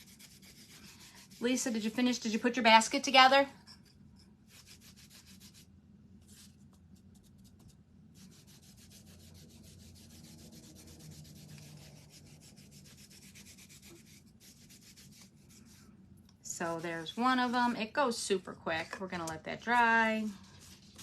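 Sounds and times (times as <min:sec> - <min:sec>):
cloth scrubbing wood: 0:16.5 - 0:17.8.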